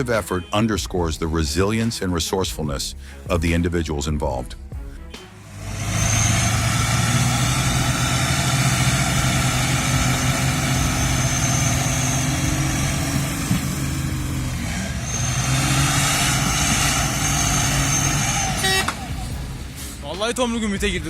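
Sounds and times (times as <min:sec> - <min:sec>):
diesel engine straining under load: 0:05.4 - 0:20.6
high whistle: 0:05.6 - 0:14.1, 0:14.7 - 0:19.4.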